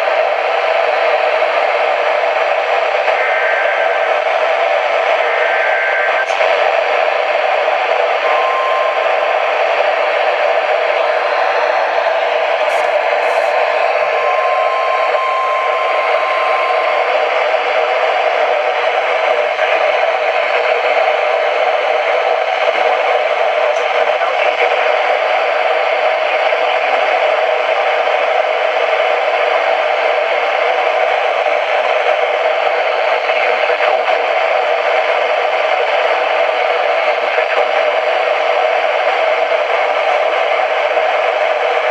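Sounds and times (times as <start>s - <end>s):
radio static hiss: 0.0s - 41.9s
faint steady tone: 2.8s - 18.5s.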